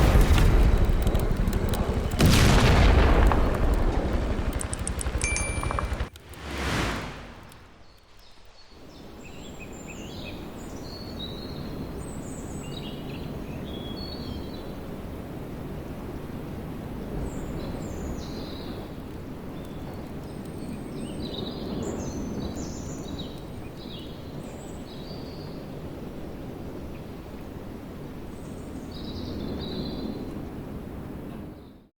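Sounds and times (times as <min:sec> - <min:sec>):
low outdoor background rumble: 0:00.0 - 0:08.2.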